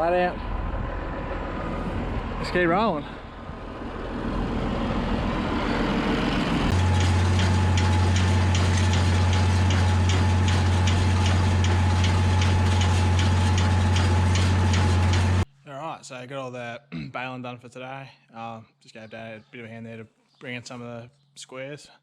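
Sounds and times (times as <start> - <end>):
tractor engine running: 0.5 - 15.5.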